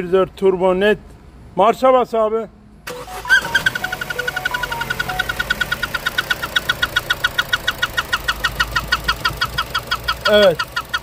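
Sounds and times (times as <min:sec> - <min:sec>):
car engine idling: 0:02.9 - 0:11.0
sharp even engine ticking: 0:02.9 - 0:11.0.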